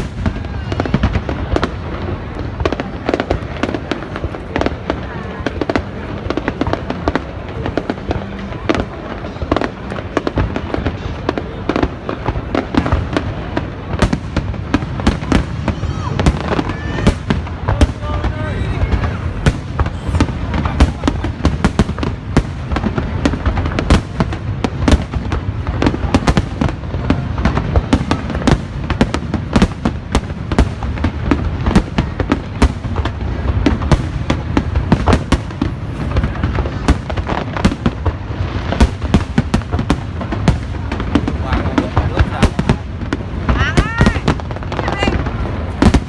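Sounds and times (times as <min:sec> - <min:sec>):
fireworks bangs and crackles: 0:00.0 - 0:46.0
fireworks deep booms: 0:00.0 - 0:46.0.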